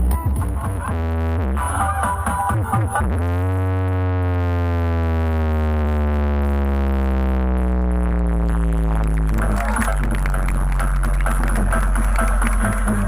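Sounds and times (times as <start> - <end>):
electronic dance beat: 0.0 - 4.7, 5.7 - 13.0
heavy bass: 0.0 - 13.0.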